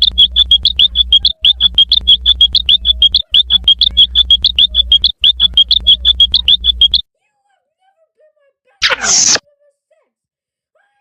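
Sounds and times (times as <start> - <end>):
cartoon rapid high chirps: 0.0 - 7.0, 8.8 - 9.4.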